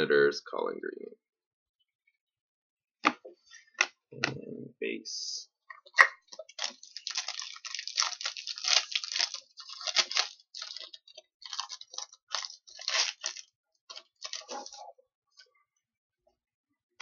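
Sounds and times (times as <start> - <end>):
cards and packaging rustling: 6.3 - 14.8.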